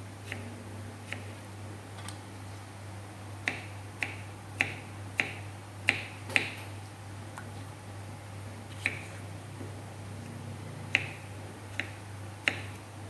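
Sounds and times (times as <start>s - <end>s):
knife chopping on cutting board: 3.4s - 6.6s, 8.8s - 9.1s, 10.9s - 12.8s.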